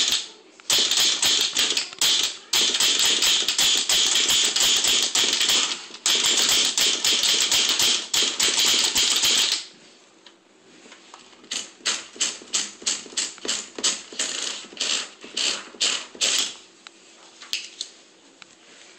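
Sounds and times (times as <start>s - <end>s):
typewriter keystrikes: 0.0s - 9.7s, 11.4s - 16.6s.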